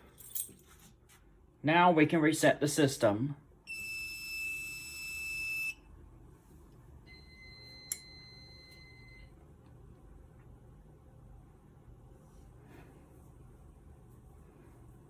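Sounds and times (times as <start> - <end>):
high alarm beep: 3.7 - 5.8, 7.1 - 9.3
lower steady beep: 3.7 - 5.8, 7.1 - 9.3.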